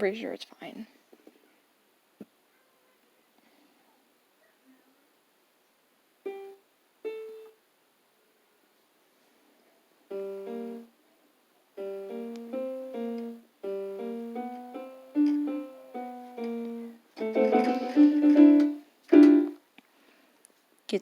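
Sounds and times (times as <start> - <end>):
electronic keyboard single notes: 6.3 - 7.6, 10.1 - 10.9, 11.8 - 19.6
keyboard keys mashed in cluster: 16.4 - 19.6.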